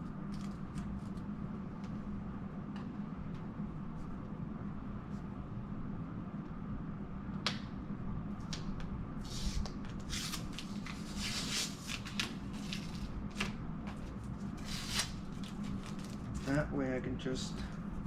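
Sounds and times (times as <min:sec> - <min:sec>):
packaging scraping and rustling: 0:14.5 - 0:16.6.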